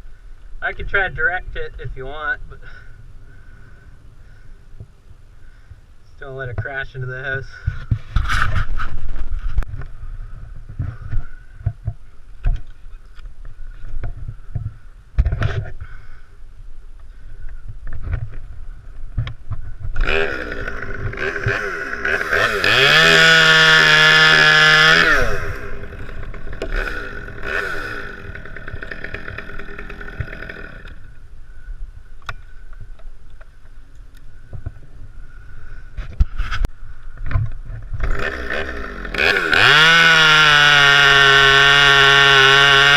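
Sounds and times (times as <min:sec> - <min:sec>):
chainsaw revving: 0:20.0 - 0:31.1, 0:38.0 - 0:42.9.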